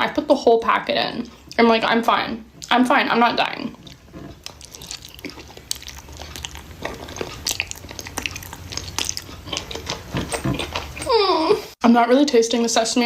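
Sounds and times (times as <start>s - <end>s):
person chewing food: 3.7s - 11.7s
wet mouth smacks and clicks: 4.4s - 11.0s.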